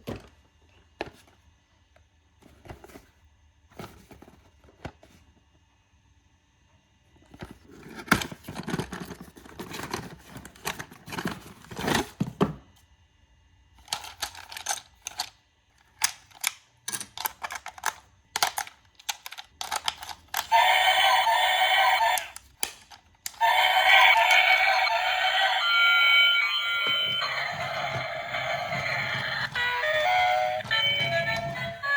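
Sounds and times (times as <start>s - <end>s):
toy electronic sound effect: 20.4s - 22.4s, 23.3s - 31.9s.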